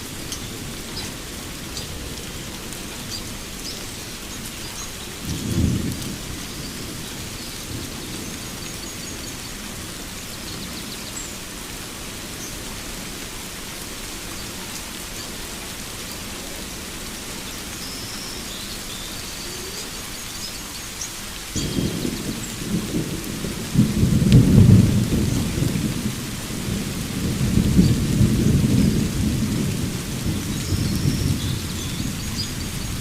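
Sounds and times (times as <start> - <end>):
low rumble of thunder: 0.0 - 11.4, 21.6 - 33.0
steady rain falling: 0.0 - 33.0.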